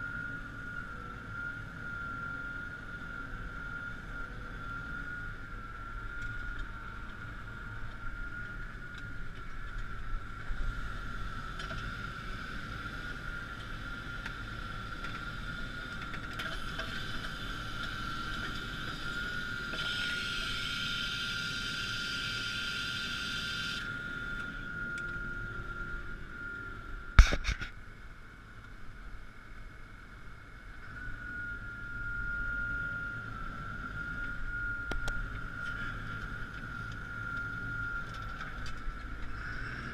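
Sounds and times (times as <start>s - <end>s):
high whine: 0.0s - 39.9s
tractor engine drone: 0.0s - 39.9s
hiss: 19.8s - 23.9s.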